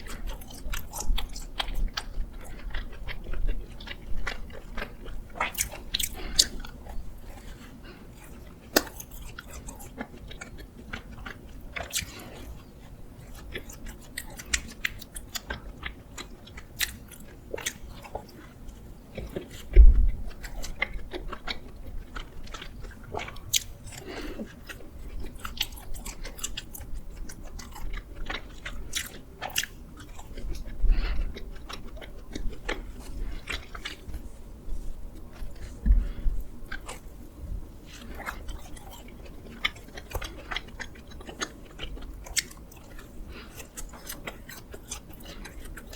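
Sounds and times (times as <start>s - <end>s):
biting and chewing doughnuts: 0.0s - 45.9s
low thud: 19.8s - 20.2s.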